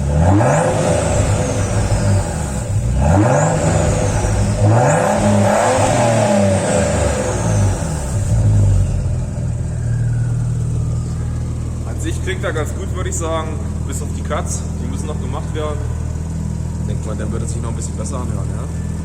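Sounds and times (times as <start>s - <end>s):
car engine idling: 0.0s - 19.0s
car engine revving: 0.0s - 19.0s.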